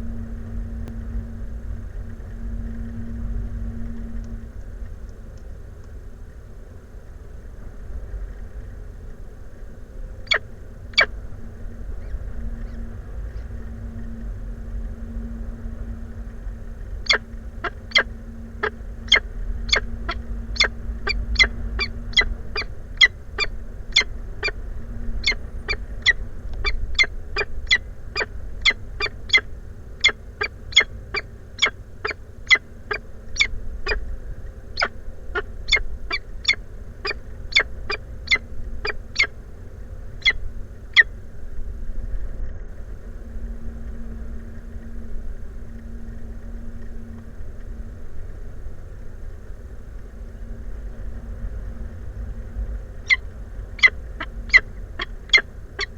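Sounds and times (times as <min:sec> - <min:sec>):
low rumble and hum: 0:00.0 - 0:55.9
falcon calling: 0:10.2 - 0:11.2, 0:17.0 - 0:34.1, 0:34.8 - 0:39.4, 0:40.2 - 0:41.1, 0:53.0 - 0:55.9.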